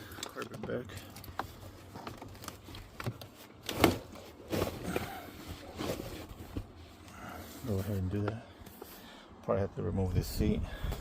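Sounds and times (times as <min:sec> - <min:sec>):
carpet rustling and crinkling: 0:00.0 - 0:09.2.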